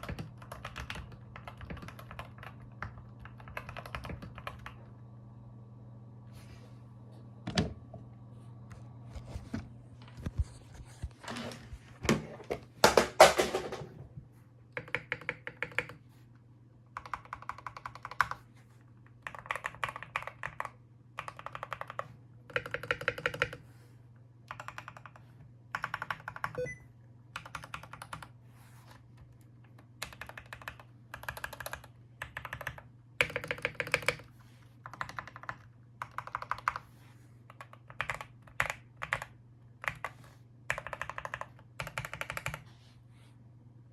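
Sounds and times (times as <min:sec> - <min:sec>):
mechanical keyboard typing: 0:00.0 - 0:04.8, 0:14.8 - 0:16.0, 0:17.0 - 0:18.4, 0:19.2 - 0:23.6, 0:24.5 - 0:26.8, 0:27.4 - 0:28.3, 0:30.0 - 0:36.9, 0:37.5 - 0:42.6.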